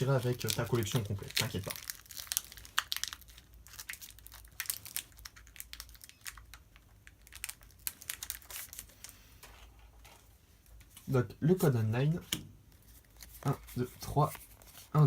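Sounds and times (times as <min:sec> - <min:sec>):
foil wrapper crinkling and tearing: 0:00.0 - 0:09.2.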